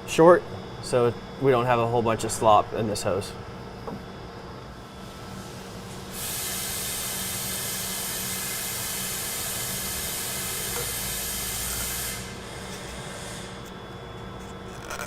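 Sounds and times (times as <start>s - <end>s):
compressed-air tool hissing: 6.1s - 13.7s.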